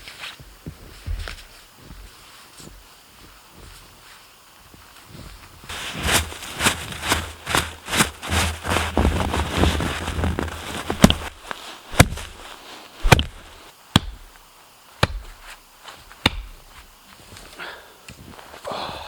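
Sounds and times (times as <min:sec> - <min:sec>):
snow and brush scraping: 0:05.0 - 0:13.7
sticks snapping: 0:10.0 - 0:14.3.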